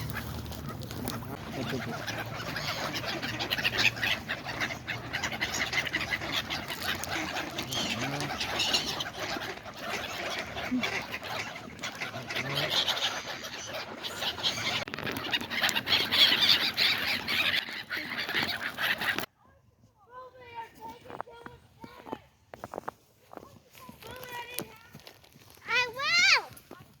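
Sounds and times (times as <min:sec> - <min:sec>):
waterfowl calling: 0:00.0 - 0:19.3.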